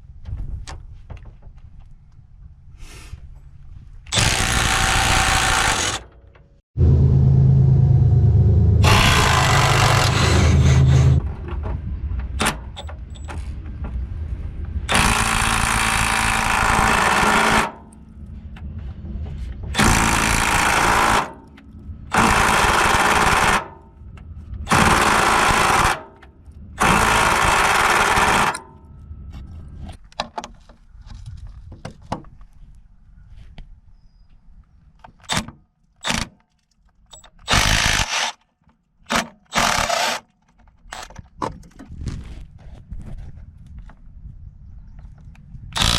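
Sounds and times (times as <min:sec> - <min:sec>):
impact wrench hammering: 0:08.8 - 0:11.2, 0:26.8 - 0:28.8.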